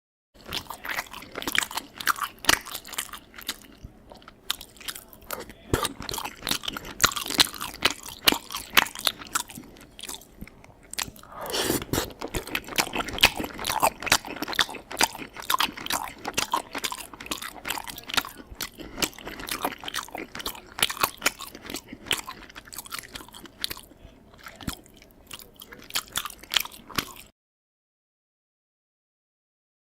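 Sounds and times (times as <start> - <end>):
person chewing food: 0.4 - 27.3.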